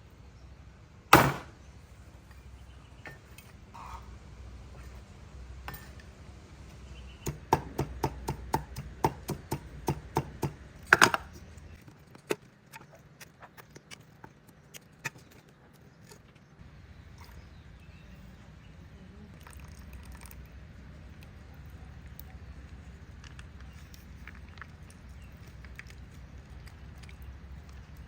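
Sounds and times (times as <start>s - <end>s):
sharp knocks: 1.1s - 1.5s.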